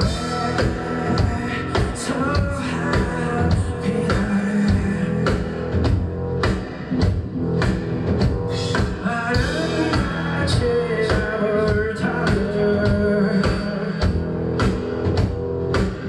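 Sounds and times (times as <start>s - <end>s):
person singing: 0.0s - 6.0s, 8.5s - 14.8s
live rock band playing: 0.0s - 16.0s.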